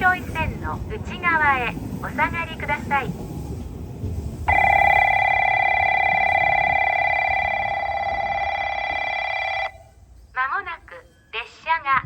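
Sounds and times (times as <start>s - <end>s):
electronic warning bell ringing: 4.5s - 9.9s.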